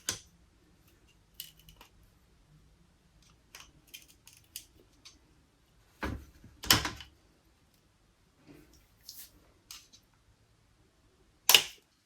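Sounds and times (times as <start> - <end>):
metal parts clicking: 1.3 - 1.9, 3.5 - 4.8.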